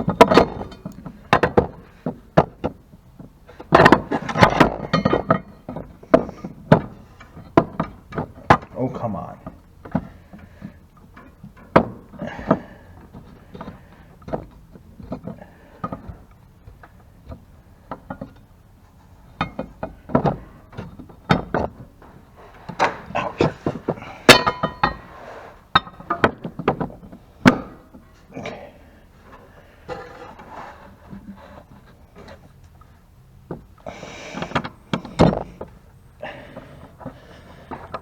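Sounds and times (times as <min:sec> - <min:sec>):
metal clinks and scrapes: 0:22.3 - 0:26.2.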